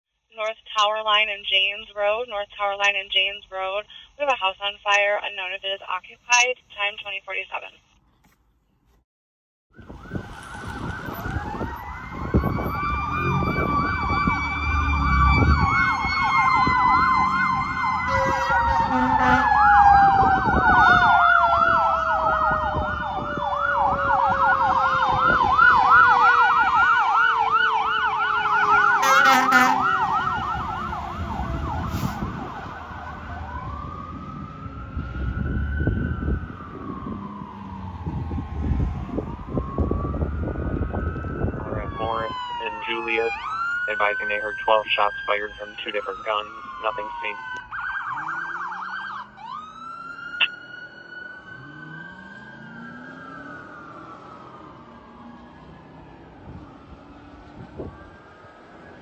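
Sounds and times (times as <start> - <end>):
siren wail: 9.7 - 59.0
siren yelp: 9.7 - 59.0
siren tone gliding down: 9.8 - 59.0
air horn blasts: 18.0 - 19.6, 28.8 - 30.1.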